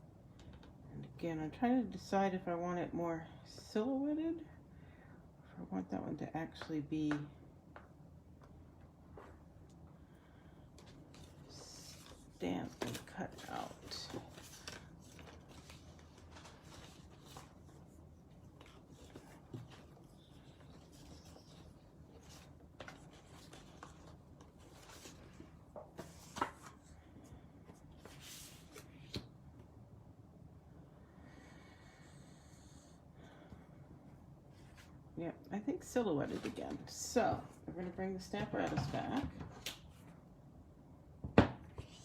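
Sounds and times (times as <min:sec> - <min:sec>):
paper rubbing and rustling: 0:11.1 - 0:26.9.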